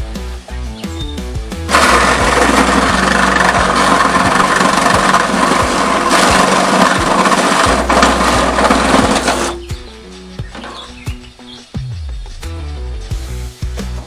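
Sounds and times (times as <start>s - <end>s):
power tool cutting sheet metal: 1.7s - 9.7s.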